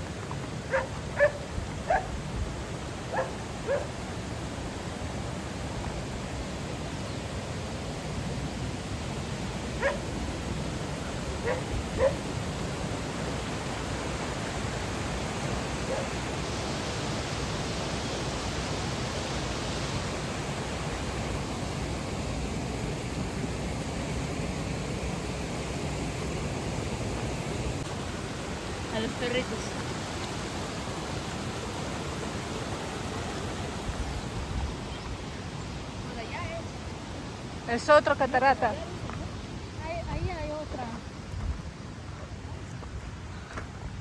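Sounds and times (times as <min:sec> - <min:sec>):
dog barking: 0:00.7 - 0:02.1, 0:03.1 - 0:03.9, 0:09.8 - 0:10.1, 0:11.4 - 0:12.2, 0:15.8 - 0:16.2.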